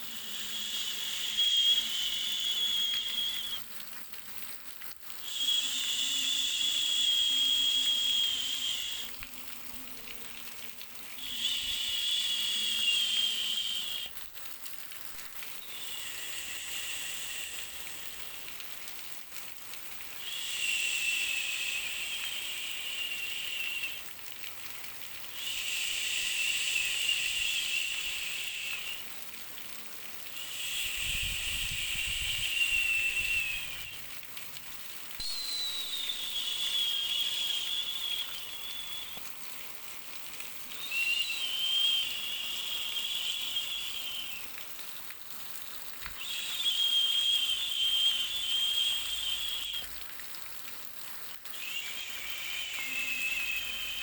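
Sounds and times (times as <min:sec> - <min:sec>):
faint wavering whistle tone: 0:00.0 - 0:03.7, 0:05.2 - 0:14.2, 0:15.6 - 0:18.4, 0:20.2 - 0:24.1, 0:25.4 - 0:29.1, 0:30.3 - 0:34.1, 0:35.2 - 0:39.3, 0:40.6 - 0:45.0, 0:46.1 - 0:50.0, 0:51.5 - 0:54.0
white noise hiss: 0:00.0 - 0:04.4, 0:05.0 - 0:14.3, 0:15.0 - 0:50.4, 0:51.0 - 0:54.0.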